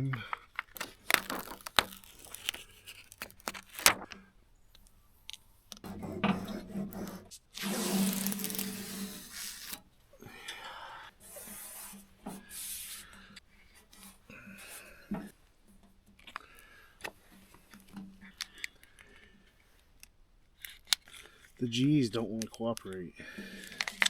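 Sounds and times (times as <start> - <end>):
rustling and rubbing of sheets: 7.6 - 9.8.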